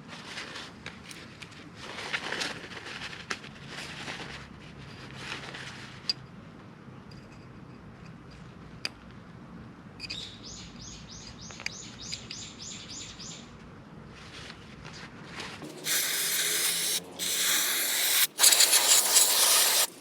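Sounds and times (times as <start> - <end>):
bird chirping: 10.0 - 13.5.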